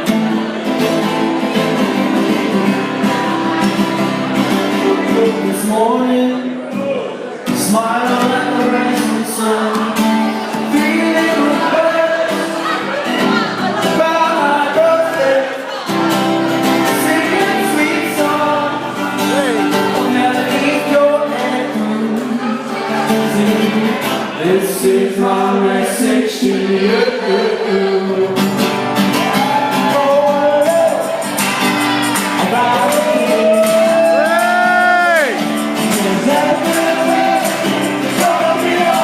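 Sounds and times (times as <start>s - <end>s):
guitar: 0.0s - 39.0s
person singing: 7.5s - 39.0s
live band music: 28.4s - 39.0s.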